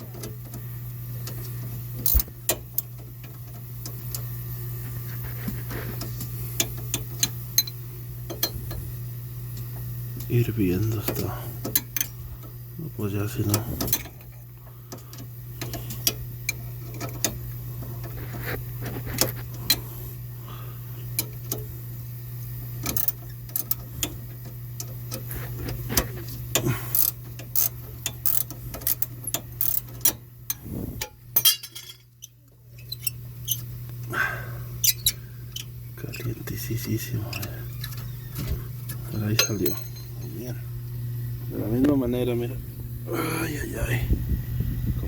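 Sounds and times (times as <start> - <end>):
steady low hum: 0.0 - 45.0.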